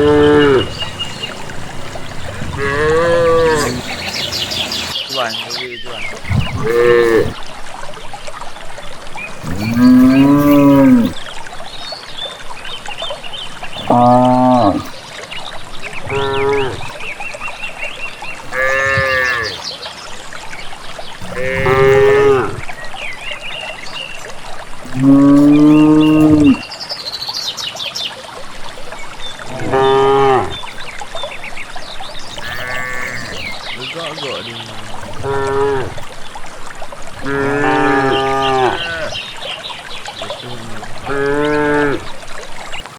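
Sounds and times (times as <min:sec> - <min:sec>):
cattle mooing: 0:00.0 - 0:04.7, 0:06.4 - 0:07.4, 0:09.4 - 0:11.2, 0:13.9 - 0:14.9, 0:16.0 - 0:16.9, 0:18.4 - 0:19.5, 0:21.2 - 0:22.6, 0:24.9 - 0:26.6, 0:29.5 - 0:30.6, 0:32.4 - 0:33.6, 0:35.1 - 0:36.1, 0:37.2 - 0:39.2, 0:40.5 - 0:42.1.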